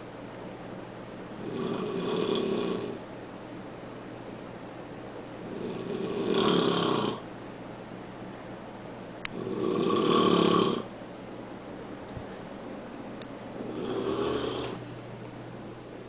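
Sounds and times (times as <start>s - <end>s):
man snoring loudly: 1.4s - 3.0s, 5.4s - 7.2s, 9.3s - 10.9s, 13.6s - 14.8s.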